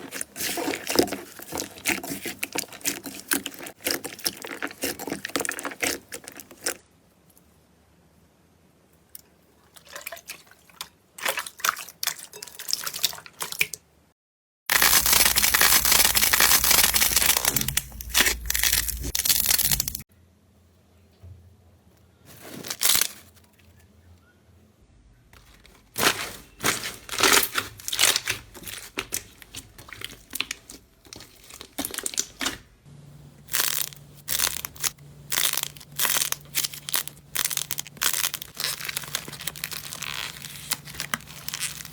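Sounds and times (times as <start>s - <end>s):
slime crackling when squeezed: 14.7s - 20.0s, 26.0s - 32.6s, 33.5s - 41.9s.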